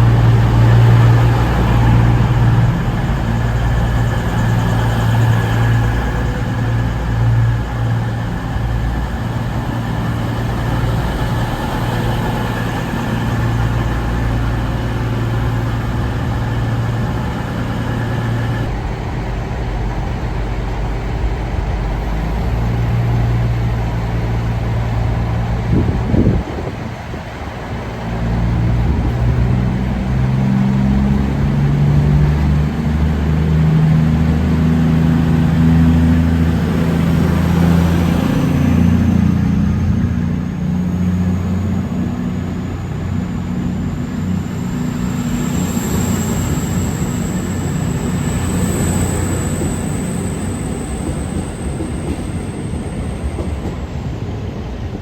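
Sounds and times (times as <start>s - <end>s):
thin high whine: 0.0s - 22.2s, 34.9s - 54.6s
train running with low hum: 0.0s - 55.0s.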